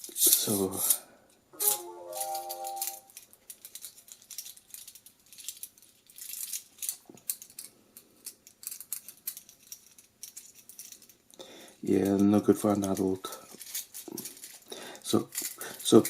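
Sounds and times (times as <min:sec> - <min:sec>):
toy handcuffs clicking and rattling: 0:01.6 - 0:16.0.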